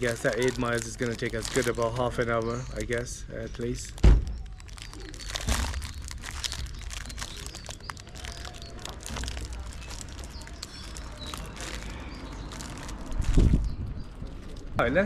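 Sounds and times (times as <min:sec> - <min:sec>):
crinkling and rustling: 0:00.0 - 0:14.8
steady low rumble: 0:03.2 - 0:14.9.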